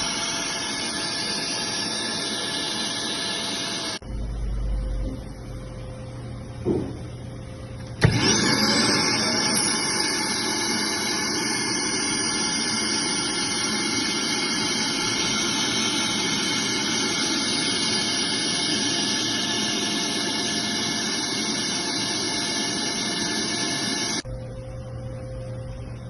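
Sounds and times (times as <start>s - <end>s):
machine motor whining: 0.0s - 4.0s, 7.8s - 24.3s.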